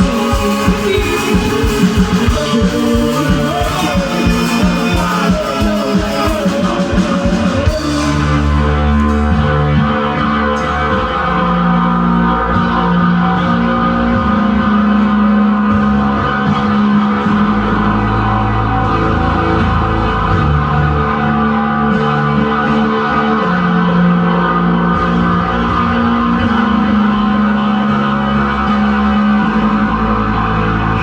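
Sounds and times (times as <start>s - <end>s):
fast dense drumming: 0.0s - 11.5s
sustained low guitar chords: 0.0s - 31.0s.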